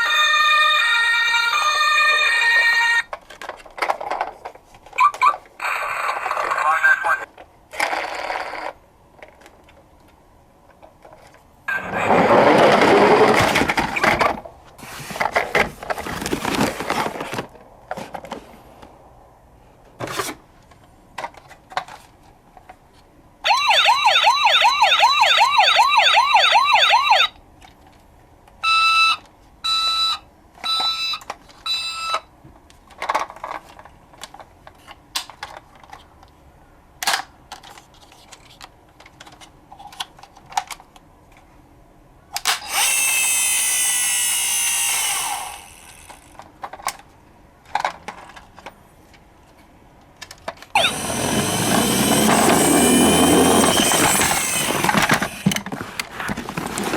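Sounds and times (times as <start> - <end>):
toy police siren warbling: 0.0 - 3.1, 5.0 - 7.2, 23.5 - 27.4, 28.6 - 32.3, 50.8 - 55.4
loud noise: 50.8 - 55.5.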